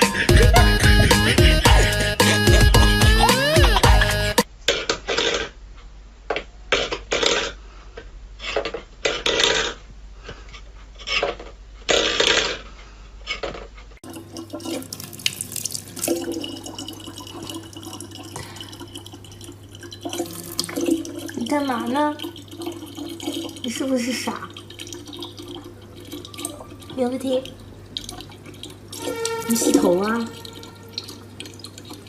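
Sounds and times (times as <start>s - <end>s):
water splashing: 14.0s - 32.0s.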